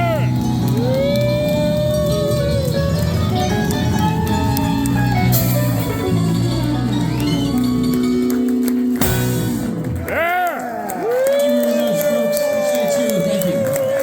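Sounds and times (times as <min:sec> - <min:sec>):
live band with guitar: 0:00.0 - 0:10.2
sudden hit: 0:09.0 - 0:10.2.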